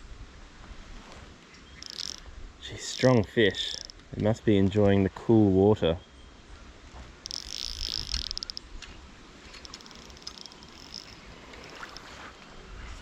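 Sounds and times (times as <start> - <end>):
stream water running: 1.1 - 4.2, 7.0 - 12.4
fly reel drag buzzing: 1.8 - 4.0, 7.2 - 8.7, 9.5 - 12.3.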